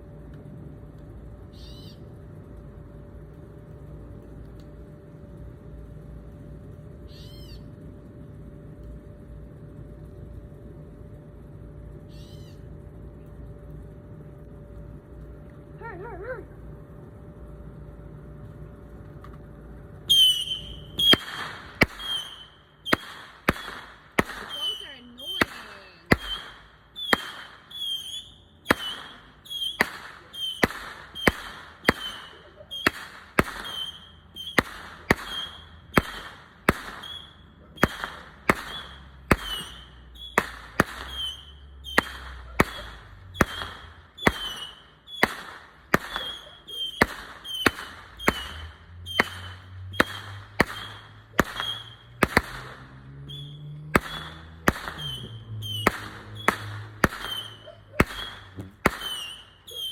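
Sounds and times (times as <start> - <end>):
firework bangs: 20.0 - 59.9
high-pitched firework whistle: 20.0 - 59.9.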